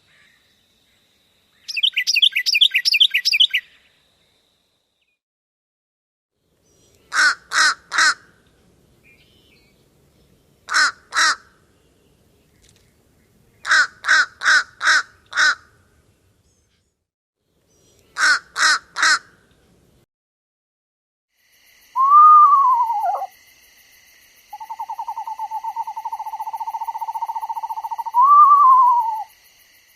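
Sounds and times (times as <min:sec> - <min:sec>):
crow cawing: 0:07.1 - 0:08.2, 0:10.7 - 0:11.5, 0:13.7 - 0:15.7, 0:18.2 - 0:19.3.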